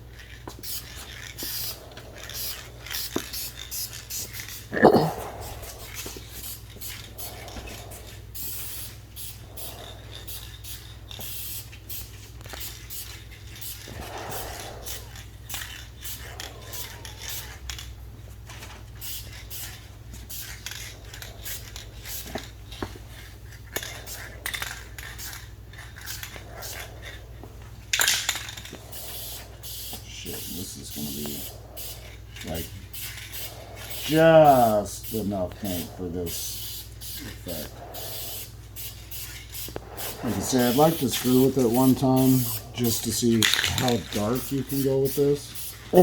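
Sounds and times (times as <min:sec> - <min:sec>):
steady low hum: 0:00.0 - 0:46.0
spray paint can spritzes: 0:00.6 - 0:01.8, 0:02.4 - 0:04.7, 0:08.4 - 0:17.5, 0:19.0 - 0:20.6, 0:28.0 - 0:32.0, 0:32.6 - 0:35.2, 0:36.2 - 0:46.0.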